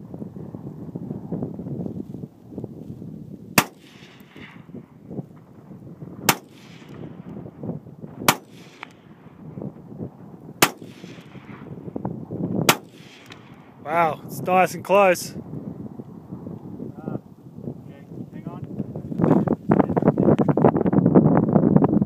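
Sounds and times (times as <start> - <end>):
rifle shots with echo: 3.6 - 13.8.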